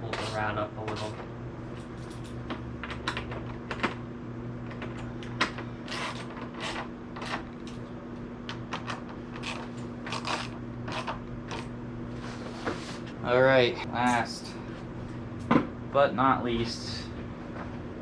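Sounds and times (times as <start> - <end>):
steady low hum: 0.0 - 18.0
tools and parts clicking and knocking: 1.8 - 4.0.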